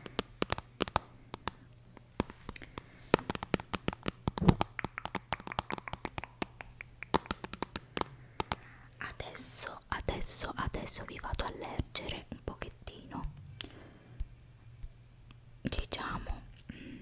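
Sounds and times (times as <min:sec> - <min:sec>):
dull knock: 0:04.4 - 0:04.6.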